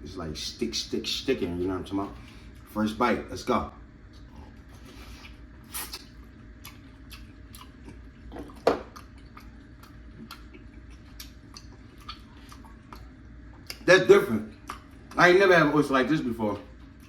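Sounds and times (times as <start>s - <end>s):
wet chewing clicks: 5.2s - 13.9s, 14.5s - 15.2s.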